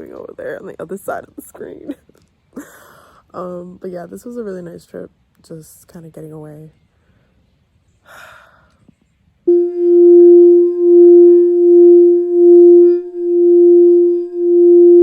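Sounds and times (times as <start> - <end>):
singing bowl low tone: 9.5 - 15.0.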